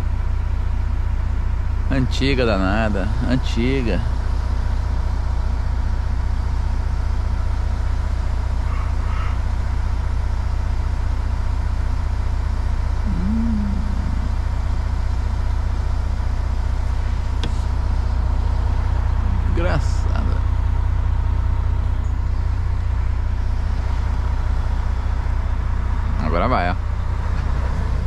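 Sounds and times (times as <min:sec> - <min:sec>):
truck engine idling: 0:00.0 - 0:28.0
murmur of voice: 0:13.1 - 0:14.4.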